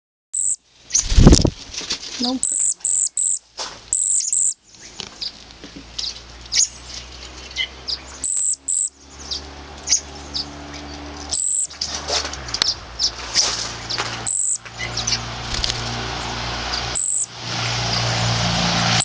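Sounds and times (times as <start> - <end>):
high thin bird calls: 0.4 - 1.5, 2.2 - 5.4, 6.0 - 15.2, 16.7 - 17.3
birds chirping: 0.4 - 18.4.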